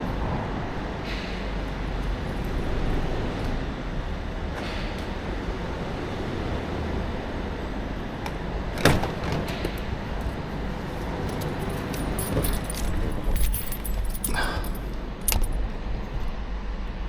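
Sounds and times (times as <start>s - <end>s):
steady low rumble: 9.6s - 17.0s
keys jingling: 9.9s - 15.6s.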